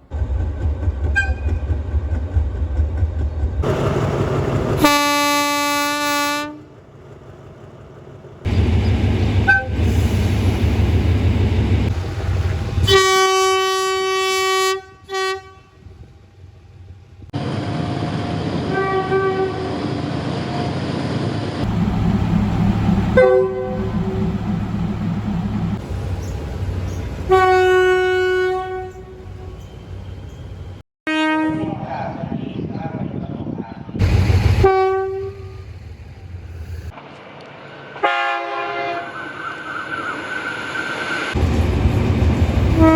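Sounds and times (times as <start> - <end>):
low rumble of trains: 0.0 - 42.9
locomotive air horn blasts: 4.8 - 6.6, 9.4 - 9.9, 12.8 - 15.8, 18.7 - 19.7, 21.6 - 25.8, 27.3 - 29.6, 31.1 - 31.7, 34.6 - 35.6, 38.0 - 39.2.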